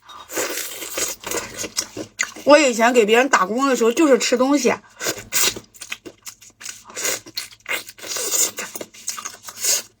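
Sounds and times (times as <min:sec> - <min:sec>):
food scraping and crunching: 0:00.1 - 0:02.5, 0:05.0 - 0:10.0.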